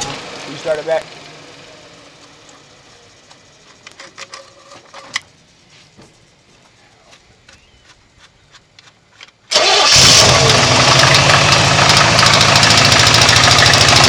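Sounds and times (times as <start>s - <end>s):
engine idling with knock: 10.3s - 14.0s.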